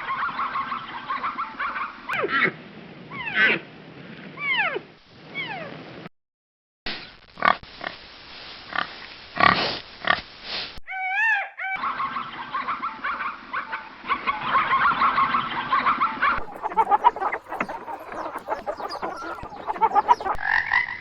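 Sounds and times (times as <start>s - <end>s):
chickens clucking: 16.4s - 20.4s
pig grunting: 16.4s - 20.4s
wavering animal call: 16.4s - 20.4s.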